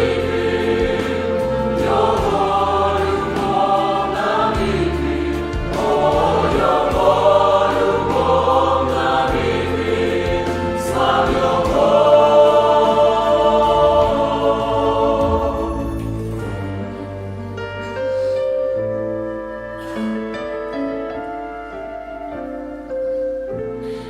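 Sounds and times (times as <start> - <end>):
youth choir singing a hymn: 0.0 - 17.0.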